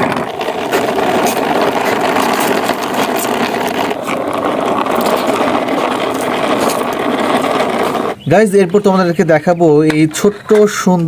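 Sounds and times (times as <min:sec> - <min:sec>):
toy truck motor whirring: 0:00.0 - 0:08.2.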